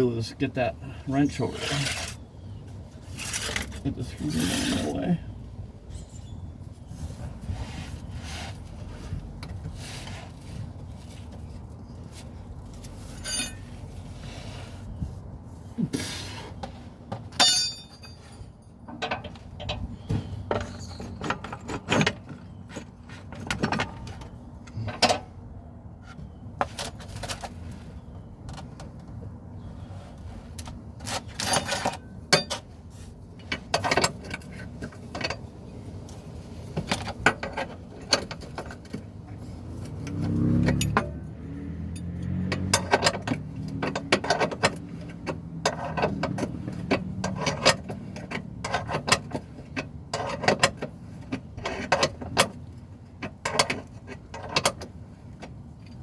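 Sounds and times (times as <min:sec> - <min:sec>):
metal tools and screws clinking: 0:12.6 - 0:14.1, 0:17.2 - 0:25.3, 0:31.1 - 0:32.8, 0:36.8 - 0:56.0.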